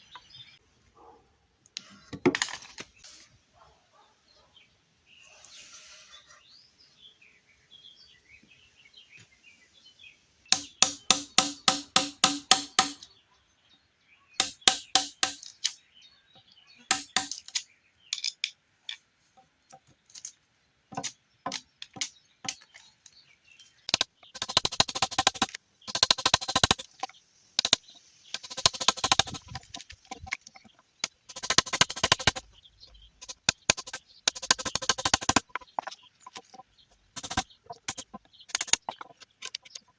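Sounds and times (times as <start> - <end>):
hand tool striking timber: 10.5 - 13.0, 14.4 - 15.5, 16.9 - 17.5, 23.9 - 27.8, 28.4 - 32.4, 33.2 - 36.6, 37.2 - 39.6.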